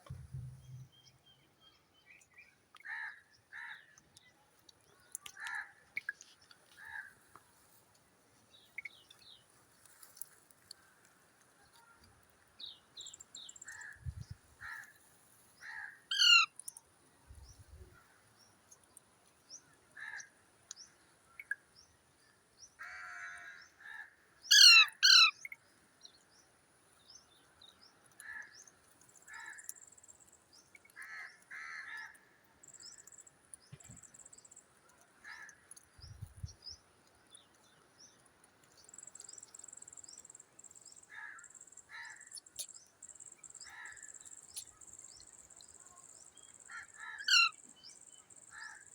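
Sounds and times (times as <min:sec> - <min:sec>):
parrot calling: 0:16.1 - 0:16.5, 0:24.5 - 0:25.3, 0:47.2 - 0:47.5
parrot screeching: 0:16.1 - 0:16.5, 0:24.5 - 0:25.3, 0:47.2 - 0:47.5.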